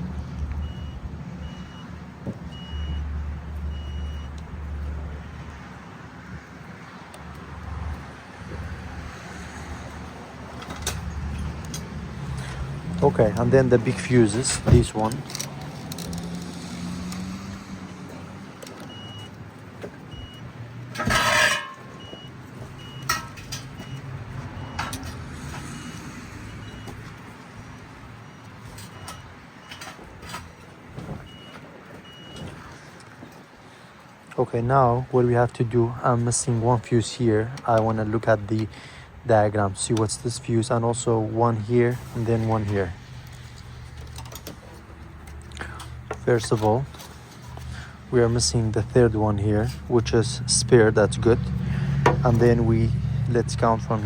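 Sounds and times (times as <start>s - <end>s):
scraping rustle: 8.6s - 20.1s, 20.8s - 33.5s, 41.8s - 50.2s.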